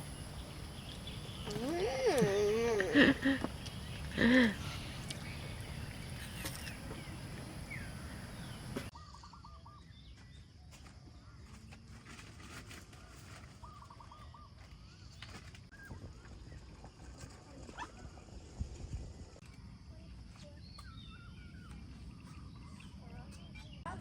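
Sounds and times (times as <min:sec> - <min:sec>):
birds calling: 0:00.0 - 0:09.8.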